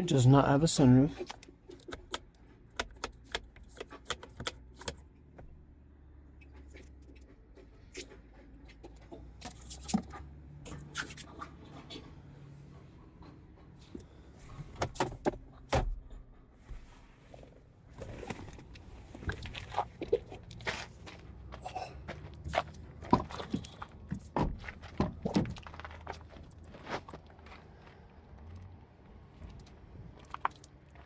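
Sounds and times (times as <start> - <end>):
handling clicks and knocks: 1.1 - 5.6.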